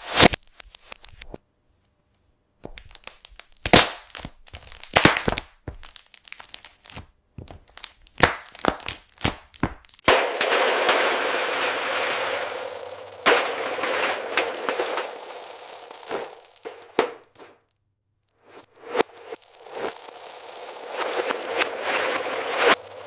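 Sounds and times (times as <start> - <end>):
continuous crunching crackle: 0.3 - 1.3, 2.7 - 17.7, 19.0 - 23.0
chocolate candies cracking: 2.7 - 11.4, 12.0 - 17.8, 19.0 - 21.6.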